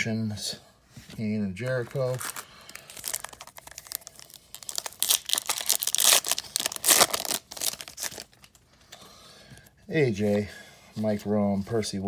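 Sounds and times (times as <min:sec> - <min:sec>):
wrapper tearing and crinkling: 0:01.8 - 0:08.6.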